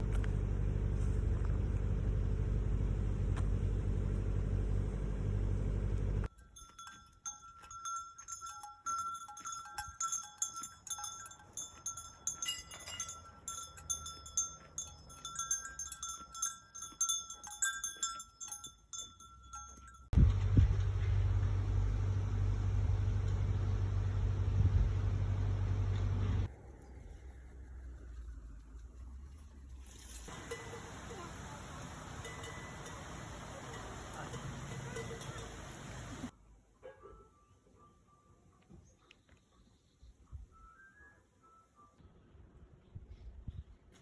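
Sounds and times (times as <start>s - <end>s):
steady low rumble: 0.0s - 6.3s, 20.1s - 29.4s
metal bells clanking: 6.2s - 21.1s, 29.9s - 36.3s.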